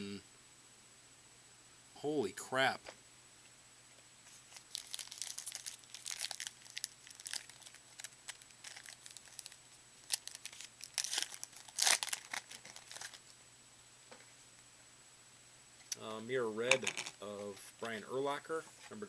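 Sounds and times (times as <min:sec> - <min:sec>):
wrapper crinkling and tearing: 0:04.4 - 0:13.3.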